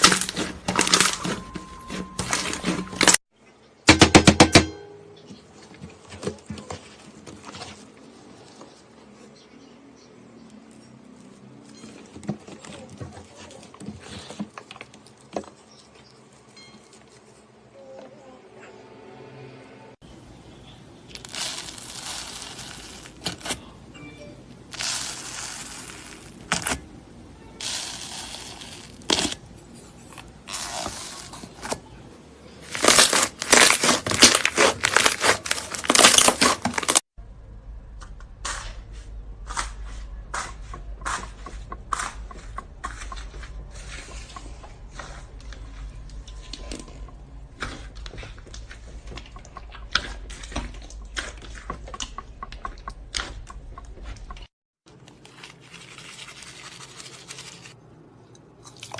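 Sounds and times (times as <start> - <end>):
slime crackling and popping: 0.0 - 1.4, 21.1 - 23.6, 24.7 - 26.8, 27.6 - 29.4, 32.7 - 37.0.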